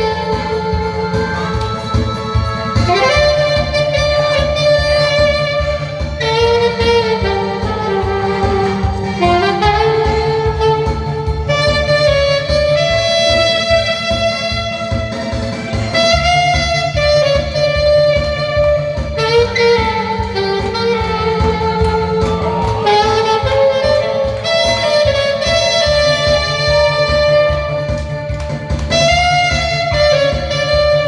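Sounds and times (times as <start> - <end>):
accompaniment with steady beat: 0.0 - 31.0
saxophone melody: 0.0 - 31.0
stepping bass line: 15.8 - 31.0.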